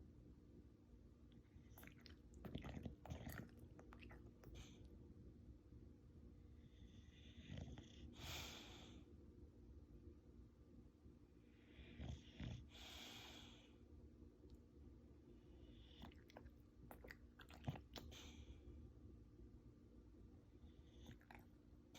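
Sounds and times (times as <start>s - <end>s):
faint breathing: 11.4s - 13.8s.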